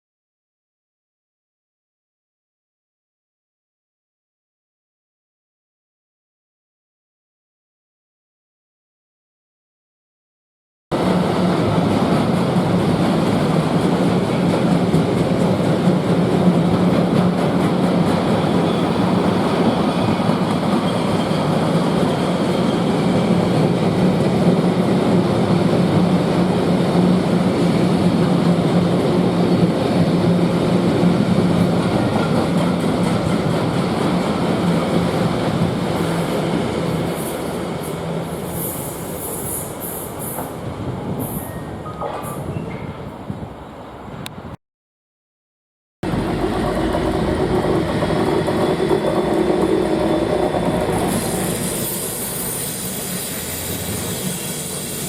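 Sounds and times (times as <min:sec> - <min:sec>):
train wheels rumbling on rails: 0:11.0 - 0:44.2, 0:46.0 - 0:55.0.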